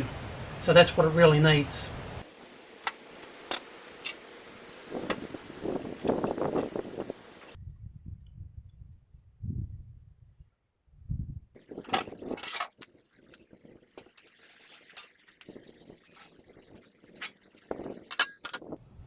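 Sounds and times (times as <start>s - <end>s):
metal parts knocking and clinking: 2.3s - 7.6s, 11.6s - 18.8s.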